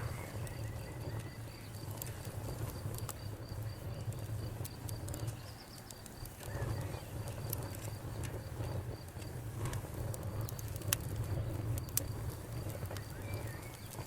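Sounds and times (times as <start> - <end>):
low steady rumble: 0.0 - 5.5
wood fire crackling and popping: 0.0 - 14.0.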